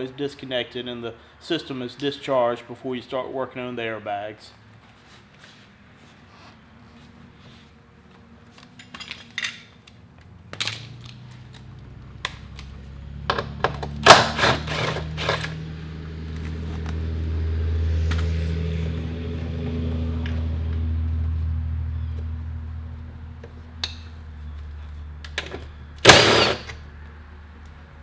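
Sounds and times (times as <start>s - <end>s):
metal tools clinking: 8.6s - 9.9s, 10.5s - 11.5s, 14.1s - 15.6s.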